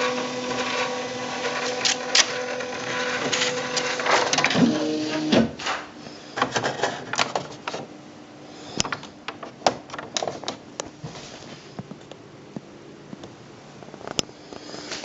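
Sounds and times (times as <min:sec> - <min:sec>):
typewriter print mechanism running: 0:00.0 - 0:05.8
typewriter clicks and knocks: 0:08.8 - 0:10.6.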